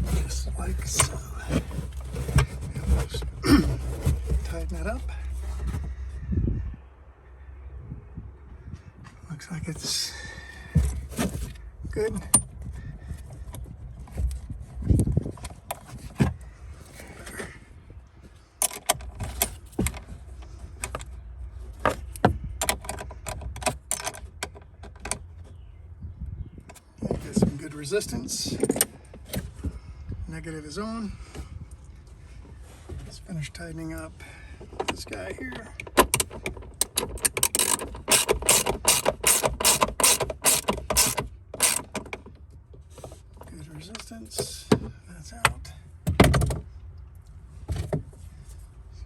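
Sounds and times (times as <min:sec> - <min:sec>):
socket ratchet clicking: 0:35.9 - 0:42.0.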